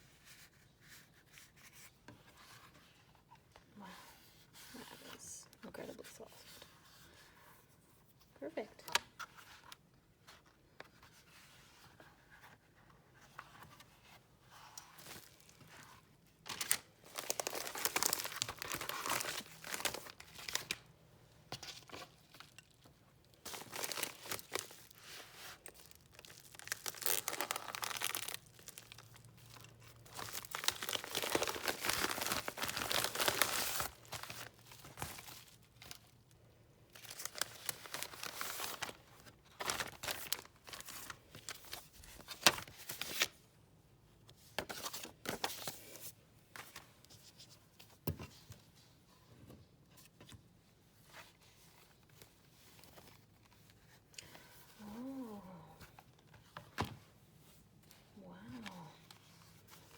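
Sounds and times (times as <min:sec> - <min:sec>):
packaging crinkling and tearing: 0:16.4 - 0:20.9, 0:21.7 - 0:36.2, 0:36.9 - 0:43.3.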